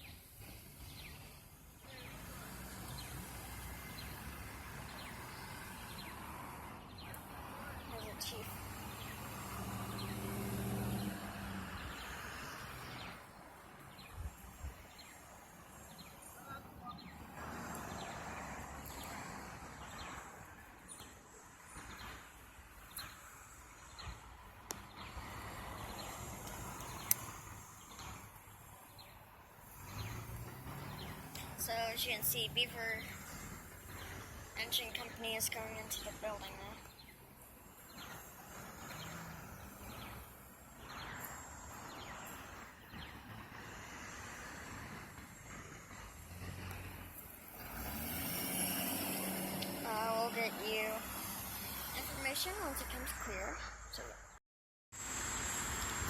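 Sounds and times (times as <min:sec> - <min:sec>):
idling vehicle engines: 0:00.0 - 0:54.3
sharp clicks: 0:26.4 - 0:27.4
bird chirping: 0:29.9 - 0:43.3.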